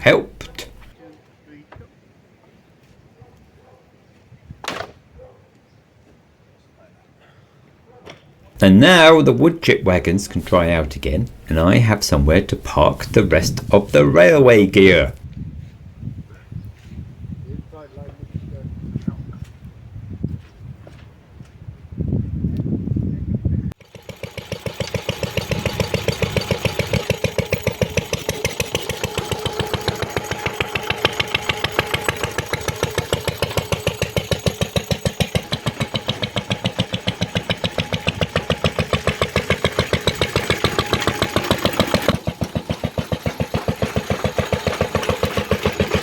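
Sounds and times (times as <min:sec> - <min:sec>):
small engine chugging: 0:00.0 - 0:01.0, 0:08.6 - 0:14.1, 0:23.8 - 0:46.0.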